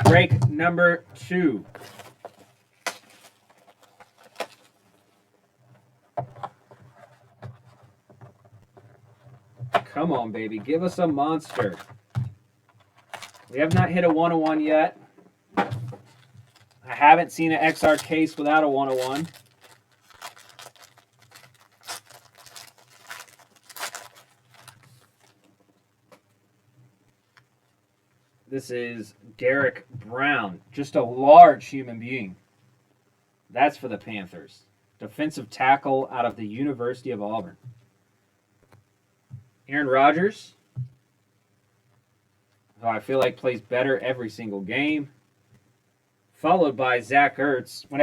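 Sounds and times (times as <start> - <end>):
faint handling noise: 0.0 - 28.5
cardboard and wrapper rustles: 1.7 - 5.2, 10.6 - 14.5, 15.6 - 25.6.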